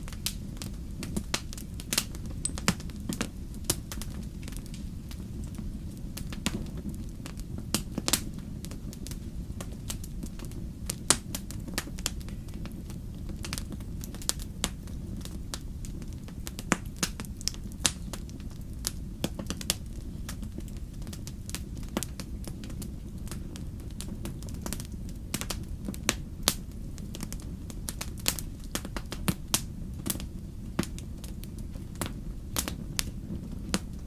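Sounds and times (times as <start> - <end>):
campfire crackling and popping: 0.0 - 34.0
fire low rumble: 0.0 - 34.0.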